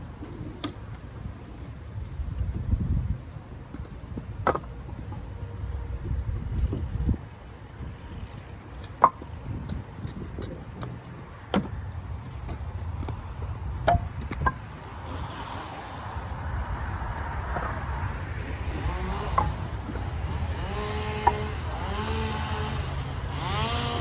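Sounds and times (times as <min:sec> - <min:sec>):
firewood knocking onto stack: 0:03.8 - 0:04.7, 0:11.5 - 0:11.8, 0:13.8 - 0:14.7, 0:19.2 - 0:20.0, 0:21.2 - 0:22.2
steady low rumble: 0:09.3 - 0:24.0
vehicle engine passing: 0:14.8 - 0:24.0.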